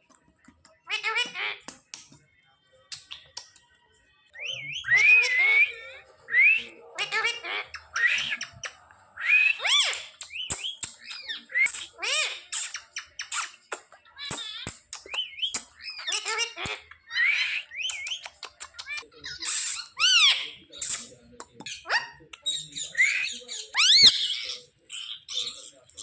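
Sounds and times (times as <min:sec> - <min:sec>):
parrot squawking and chattering: 0:00.7 - 0:01.7, 0:04.4 - 0:26.0
sharp clicks: 0:09.9 - 0:11.2.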